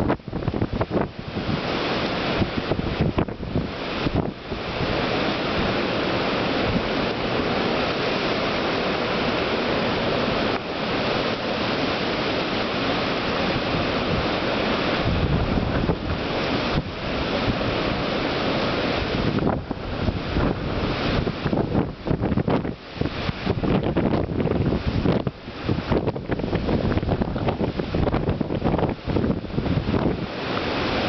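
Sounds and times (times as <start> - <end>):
wind and heavy rain: 0.0 - 31.0
wind gust buffeting microphone: 0.0 - 31.0.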